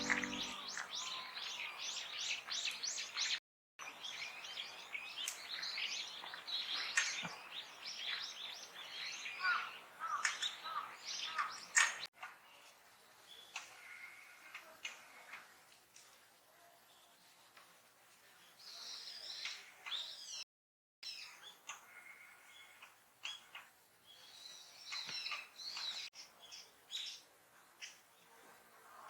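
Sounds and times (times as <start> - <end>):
lower bird call notes: 0.0 - 1.2
small birds chirping: 0.0 - 13.7, 18.3 - 20.4, 21.0 - 28.3.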